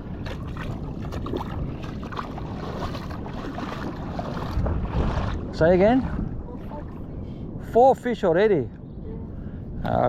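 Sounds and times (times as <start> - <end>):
wind on microphone: 0.0 - 10.0.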